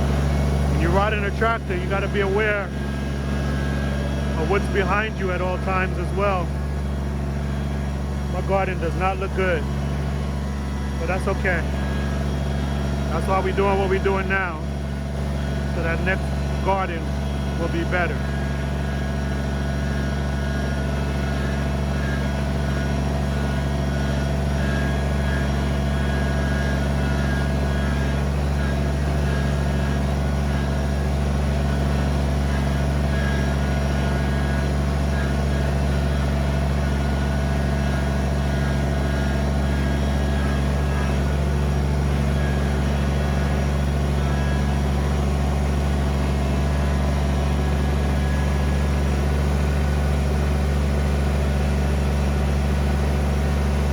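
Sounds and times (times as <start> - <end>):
diesel tractor engine running: 0.0 - 53.9.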